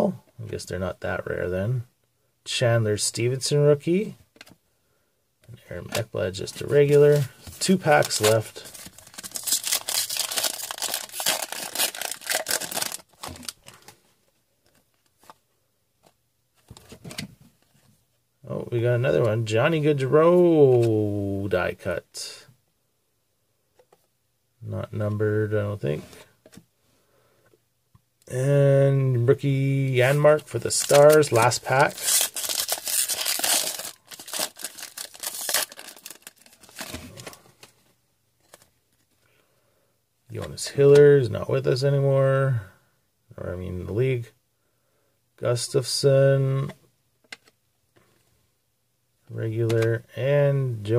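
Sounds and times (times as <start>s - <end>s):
foil wrapper tearing and crinkling: 7.9s - 13.8s, 30.7s - 37.0s.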